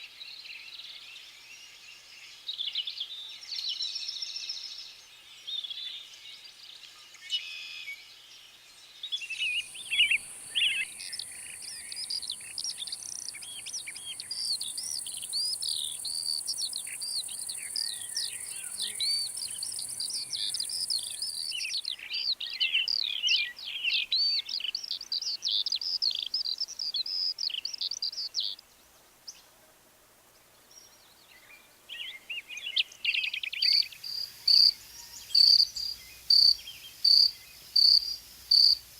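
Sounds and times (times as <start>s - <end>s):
songbirds chirping: 0.2s - 29.6s, 30.3s - 38.9s
high insect buzz: 9.6s - 21.8s, 34.0s - 38.9s.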